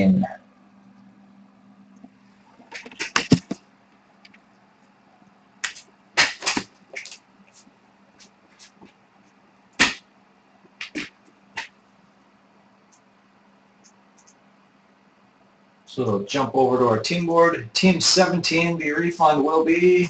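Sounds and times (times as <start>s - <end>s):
faint steady hum: 0.0s - 20.0s.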